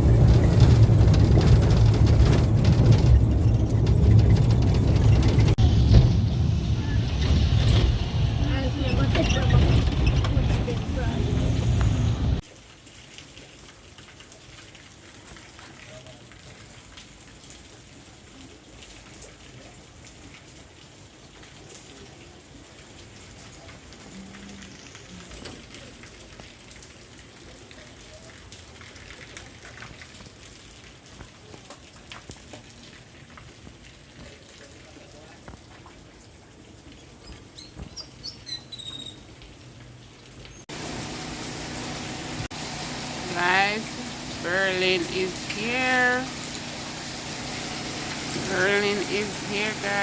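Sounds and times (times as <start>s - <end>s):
raindrops ticking on a surface: 0.0s - 50.0s
steady rain falling: 0.0s - 50.0s
high bird chirps: 37.6s - 39.2s.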